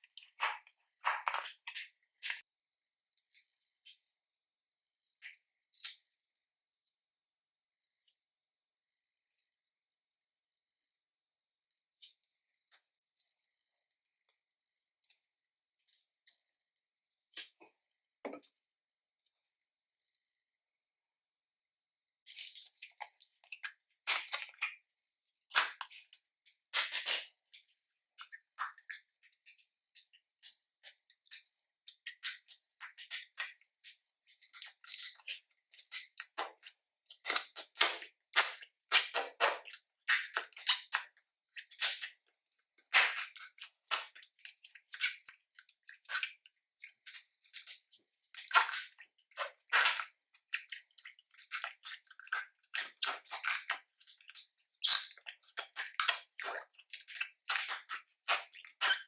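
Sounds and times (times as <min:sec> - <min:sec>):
slime squishing by hand: 0:00.0 - 0:02.5, 0:22.3 - 0:59.0.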